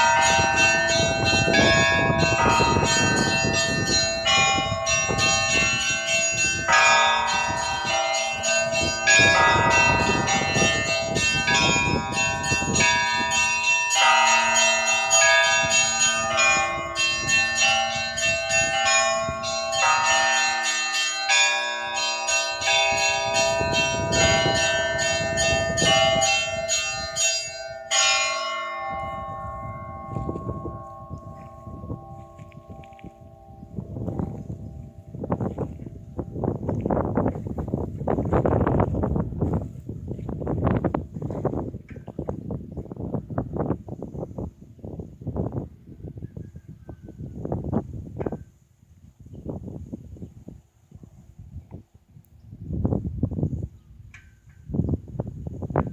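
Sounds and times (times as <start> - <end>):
church bells ringing: 0.0 - 40.9.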